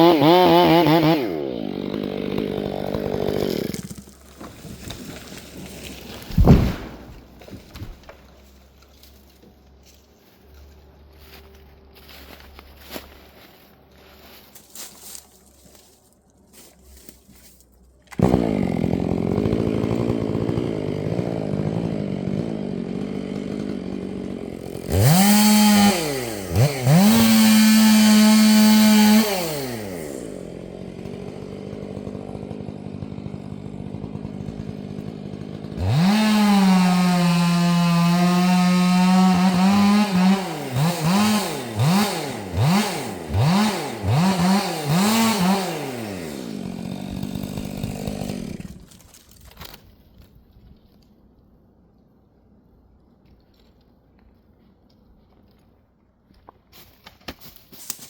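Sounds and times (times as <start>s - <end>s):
chainsaw starting and revving: 0.0s - 10.0s, 18.0s - 49.8s.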